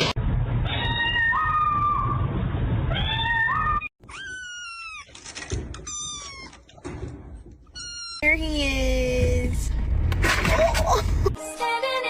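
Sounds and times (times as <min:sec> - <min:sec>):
cat meowing: 0:02.9 - 0:05.2.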